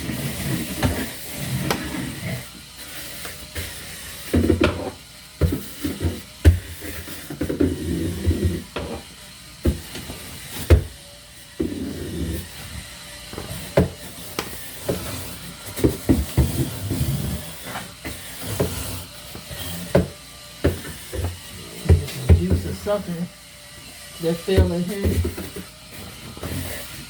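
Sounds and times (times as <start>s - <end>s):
wiping shelves: 24.2s - 27.0s.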